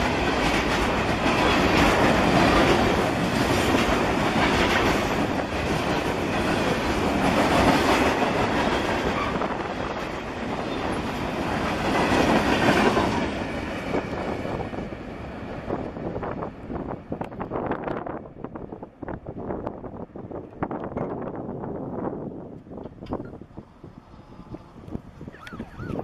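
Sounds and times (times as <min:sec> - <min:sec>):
freight train wheels clattering: 0:00.0 - 0:15.8.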